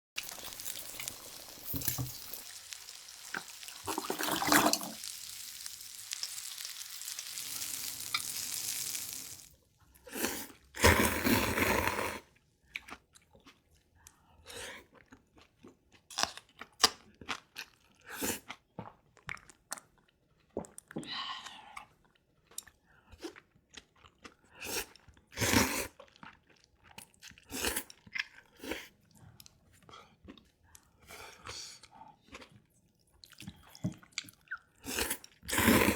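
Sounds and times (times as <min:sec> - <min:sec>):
chewing and crunching: 0:10.0 - 0:21.0, 0:21.7 - 0:35.9.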